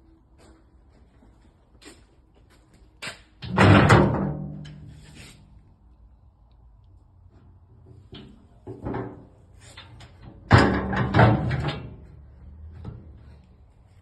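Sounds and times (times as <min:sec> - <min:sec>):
steel door banging: 0:03.4 - 0:04.7, 0:10.3 - 0:12.1.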